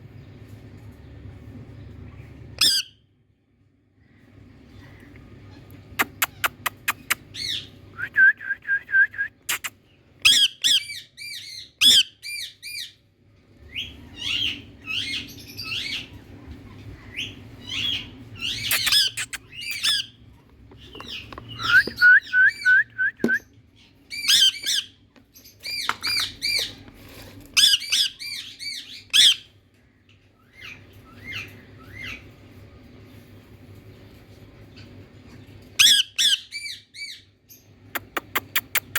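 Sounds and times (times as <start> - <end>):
parrot calling: 17.2 - 20.2
parrot trilling: 17.7 - 20.2.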